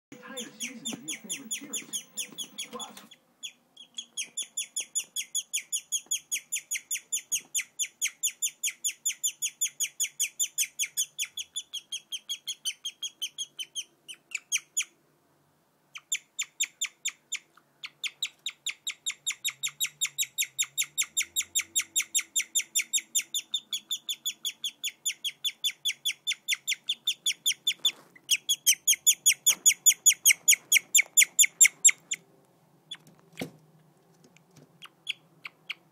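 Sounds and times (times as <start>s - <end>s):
guinea pig chirping: 0.1s - 15.0s, 15.9s - 32.3s, 32.9s - 33.5s, 34.8s - 35.9s.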